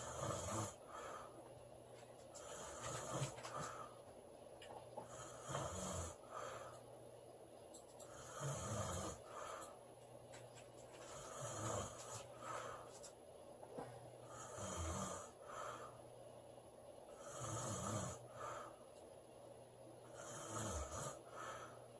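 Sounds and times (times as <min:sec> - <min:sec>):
girl snoring: 0:00.0 - 0:00.8, 0:05.0 - 0:06.2, 0:08.1 - 0:09.3, 0:11.1 - 0:12.0, 0:14.3 - 0:15.4, 0:17.2 - 0:18.2, 0:20.1 - 0:21.2.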